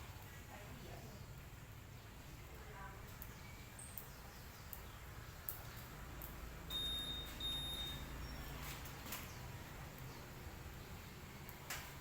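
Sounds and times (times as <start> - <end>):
high electronic beeps: 6.7 - 8.4.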